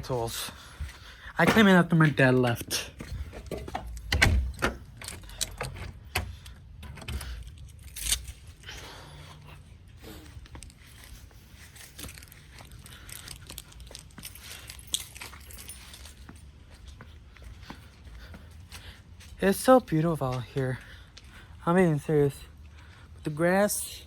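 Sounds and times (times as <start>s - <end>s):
handling knocks and clicks: 1.4s - 8.6s.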